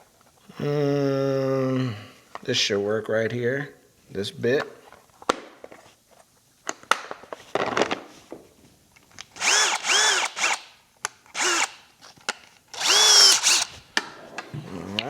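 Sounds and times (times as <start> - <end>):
electric drill spinning in bursts: 9.4 - 11.9, 12.7 - 13.9.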